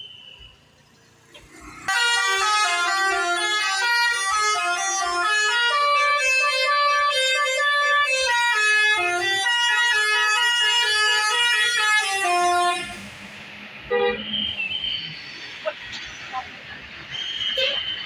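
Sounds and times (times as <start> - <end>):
multi-tone musical air horn: 1.9 - 13.1.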